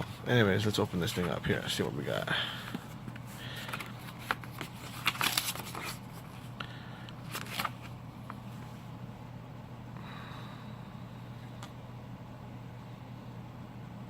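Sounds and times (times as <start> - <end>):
steady low hum: 0.0 - 14.0
cardboard packaging rustling: 2.8 - 6.5, 7.2 - 7.9.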